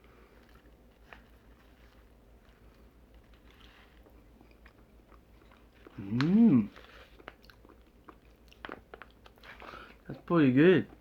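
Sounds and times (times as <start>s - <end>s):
man chewing food: 0.0s - 10.1s
man humming mmm: 6.0s - 6.7s.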